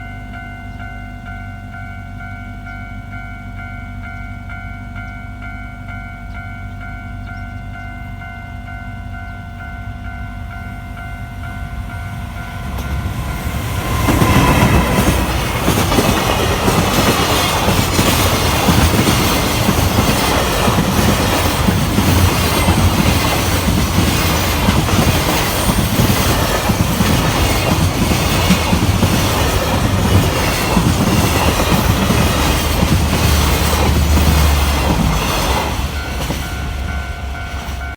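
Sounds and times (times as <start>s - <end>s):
crossing warning bell ringing: 0.0s - 37.9s
train wheels clacking on rails: 11.1s - 37.9s.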